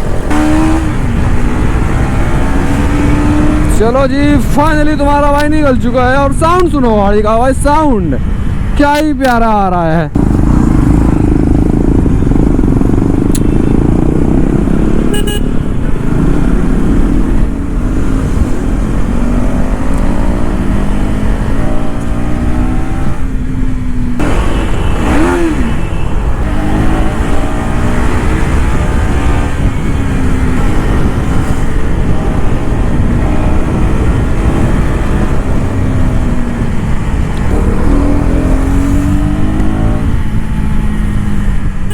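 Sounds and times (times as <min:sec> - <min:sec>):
motorcycle engine revving: 0:00.0 - 0:03.9, 0:10.1 - 0:41.9.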